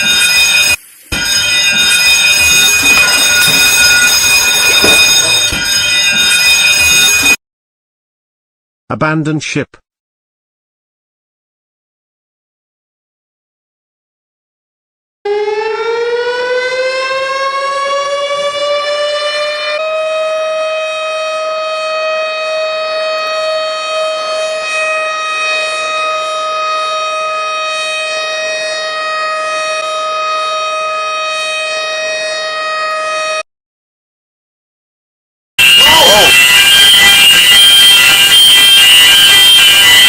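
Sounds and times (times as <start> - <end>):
ship's alarm siren: 0.0 - 7.4, 15.2 - 33.5, 35.6 - 40.0.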